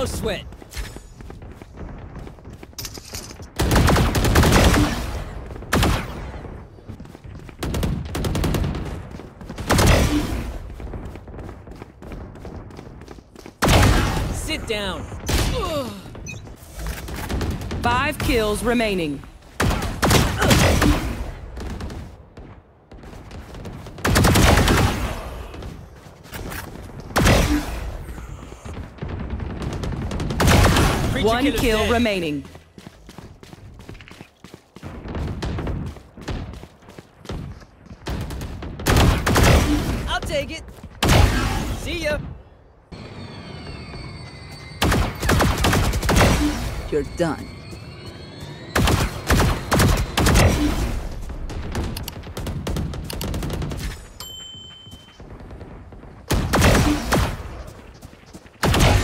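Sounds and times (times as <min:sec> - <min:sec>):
quieter gunshots: 0:03.4 - 0:14.5, 0:19.5 - 0:32.0, 0:34.8 - 0:42.4, 0:44.8 - 0:47.1, 0:48.8 - 0:54.2, 0:55.2 - 0:59.0
video game automatic gunfire: 0:03.5 - 0:13.0, 0:28.4 - 0:32.6, 0:48.8 - 0:54.0.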